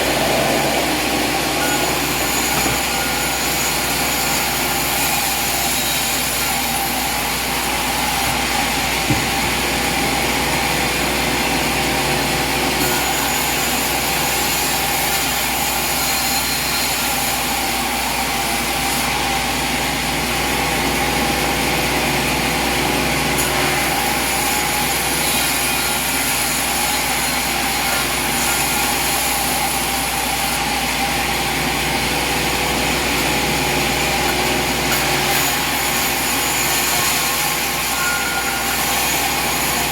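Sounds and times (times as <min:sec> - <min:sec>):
mechanical motor drone: 0:00.0 - 0:06.5.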